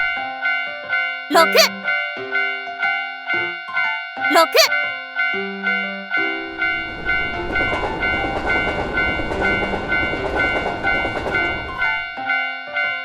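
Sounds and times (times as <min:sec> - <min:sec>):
train rumbling: 0:06.8 - 0:12.1.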